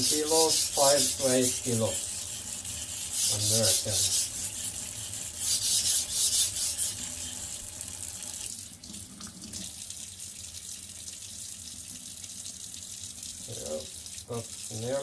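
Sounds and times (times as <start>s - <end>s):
knife scraping on whetstone: 0.0s - 7.7s.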